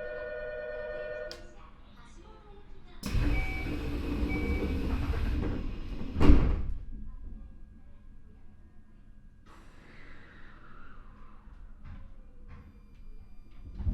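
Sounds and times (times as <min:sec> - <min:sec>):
door closing thump: 0:03.0 - 0:06.8
train doors sliding shut: 0:03.0 - 0:06.8.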